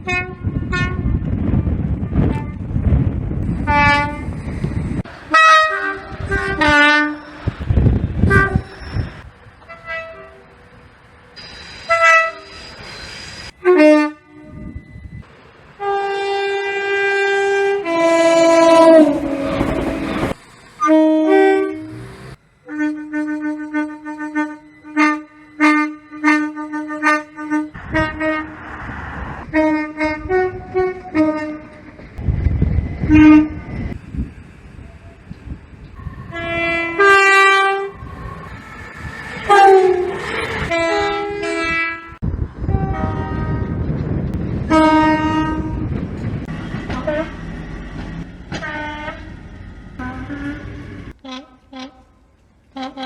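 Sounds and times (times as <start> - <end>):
two-tone train horn blasts: 0.0 - 2.7, 3.5 - 4.4, 5.3 - 10.6, 11.4 - 12.6, 13.5 - 14.9, 15.8 - 28.7, 29.4 - 32.0, 33.0 - 34.0, 36.0 - 43.8, 44.6 - 46.0, 46.8 - 47.5, 48.5 - 49.4, 50.0 - 53.0
trains rumbling past: 0.0 - 53.0.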